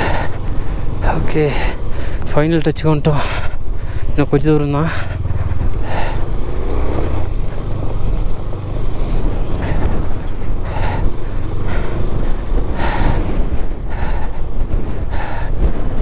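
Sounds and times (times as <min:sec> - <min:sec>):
motorcycle engine rumbling: 0:00.0 - 0:16.0
wind noise on microphone: 0:00.0 - 0:16.0.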